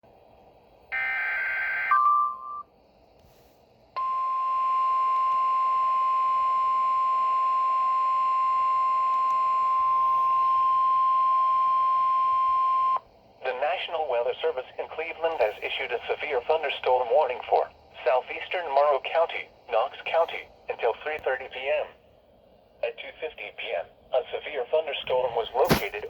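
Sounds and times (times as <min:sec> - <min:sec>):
steady alarm tone: 0:00.9 - 0:02.6.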